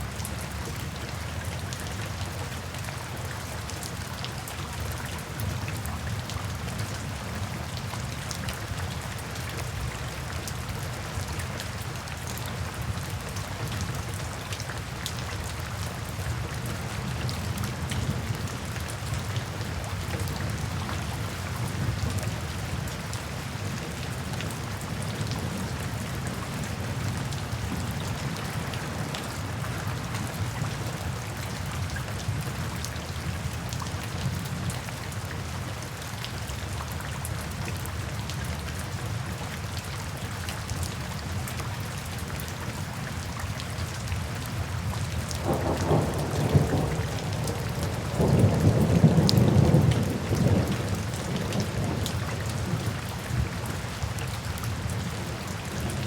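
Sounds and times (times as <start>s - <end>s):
raindrops ticking on a surface: 0.0s - 56.0s.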